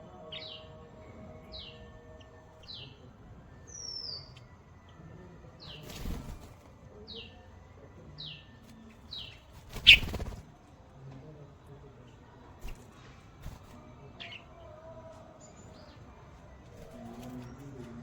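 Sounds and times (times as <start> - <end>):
small bird chirping: 8.2 - 10.4.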